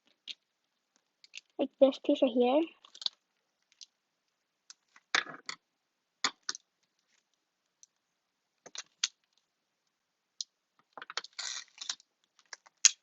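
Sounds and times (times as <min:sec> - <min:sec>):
rustling and crackling: 0:00.0 - 0:04.0.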